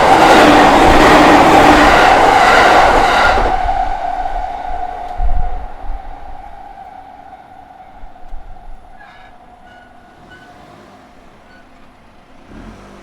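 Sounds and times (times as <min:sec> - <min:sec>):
train rumbling past: 0:00.0 - 0:12.8
faint high tones: 0:03.6 - 0:11.8.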